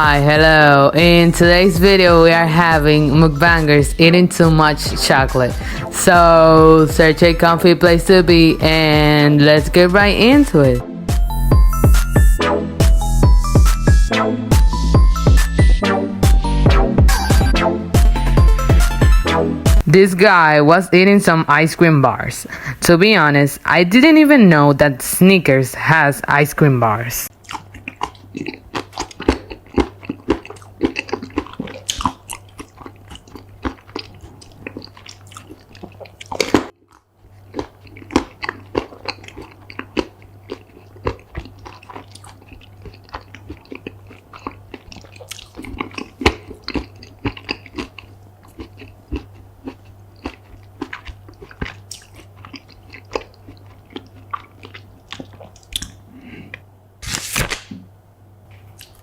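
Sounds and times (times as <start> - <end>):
steady low hum: 0.0 - 59.0
crunching and wet chewing: 27.3 - 56.7, 58.5 - 59.0
crisp bites into food: 57.0 - 57.8.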